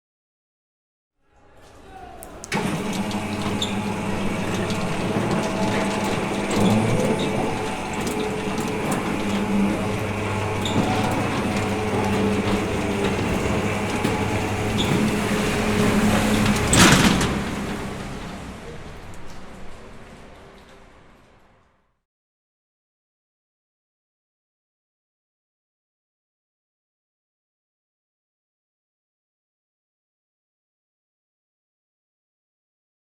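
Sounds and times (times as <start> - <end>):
shutter clunk: 2.2 - 18.4
shutter motor hum: 2.2 - 18.6.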